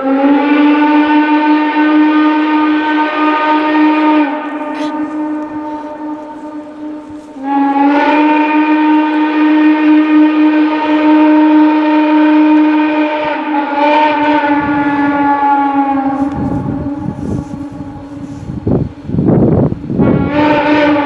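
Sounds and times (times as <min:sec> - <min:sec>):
steam locomotive whistle: 0:00.0 - 0:21.0
low rumble: 0:14.2 - 0:20.2.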